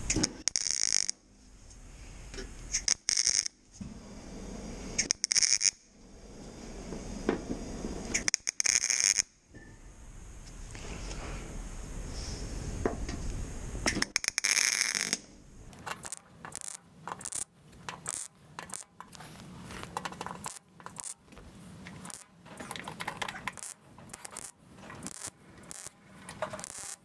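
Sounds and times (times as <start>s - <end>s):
welder crackling bursts: 0.0s - 1.2s, 2.7s - 3.6s, 5.0s - 5.9s, 8.0s - 9.4s, 13.2s - 19.0s, 19.8s - 21.3s, 21.9s - 22.4s, 23.3s - 27.0s
steady noise: 0.0s - 27.0s.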